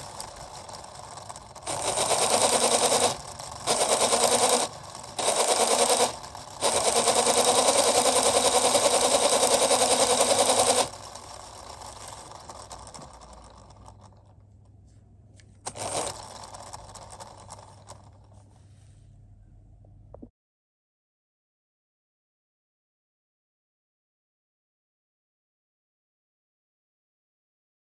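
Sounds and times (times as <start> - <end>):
fast clicking plastic rattle: 0.0 - 14.3, 15.7 - 18.2.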